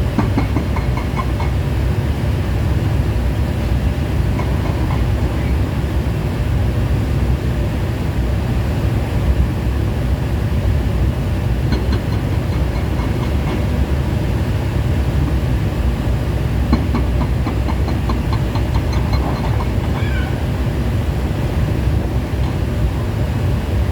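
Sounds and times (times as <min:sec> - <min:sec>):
excavator diesel engine rumbling: 0:00.0 - 0:23.9.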